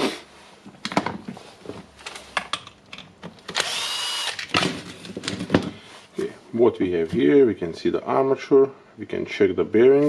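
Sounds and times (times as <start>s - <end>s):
drill parts clicking and knocking: 2.0s - 5.8s
small power tool whirring: 3.5s - 4.5s.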